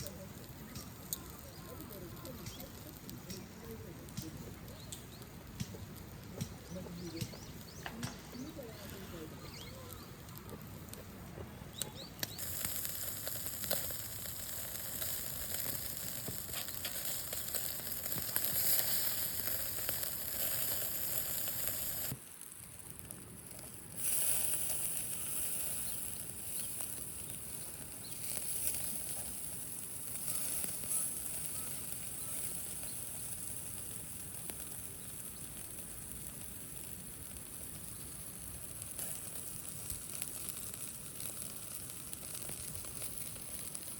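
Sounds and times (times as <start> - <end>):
food sizzling: 11.8 - 43.9.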